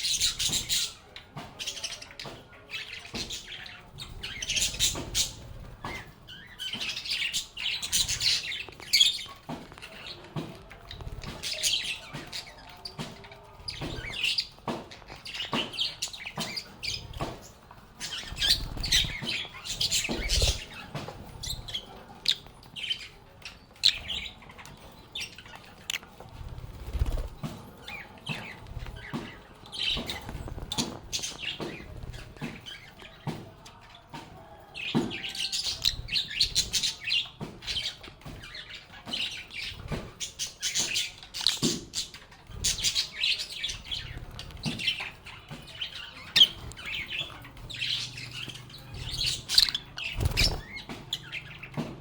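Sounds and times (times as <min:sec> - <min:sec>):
lovebirds chirping: 0:00.0 - 0:52.0.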